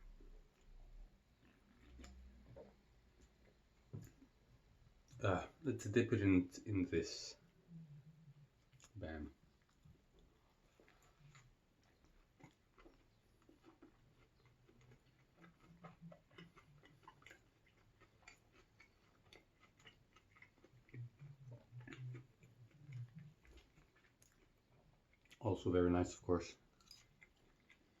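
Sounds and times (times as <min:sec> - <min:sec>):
chewing mouth clicks: 0:01.4 - 0:02.7, 0:08.6 - 0:09.0, 0:09.6 - 0:25.4, 0:26.8 - 0:28.0.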